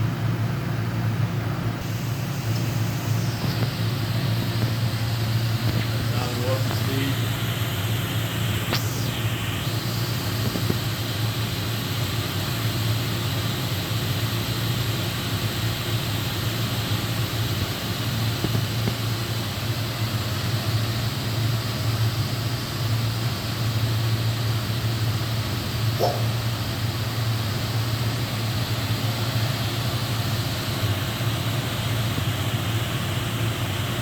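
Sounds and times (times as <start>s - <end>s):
falling whine: 0.0s - 13.4s
machine low hum: 0.0s - 34.0s
constant hiss: 1.6s - 34.0s.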